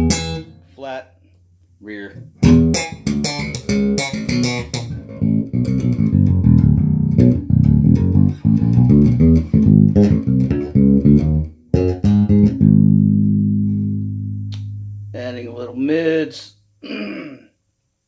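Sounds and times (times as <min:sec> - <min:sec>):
electric bass plucked notes: 0:00.0 - 0:00.8, 0:02.1 - 0:16.0.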